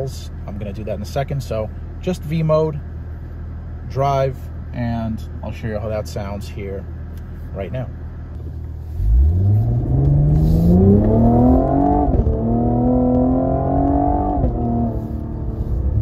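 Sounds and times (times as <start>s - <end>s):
car engine accelerating hard: 8.9s - 16.0s
exhaust pop: 9.8s - 14.9s.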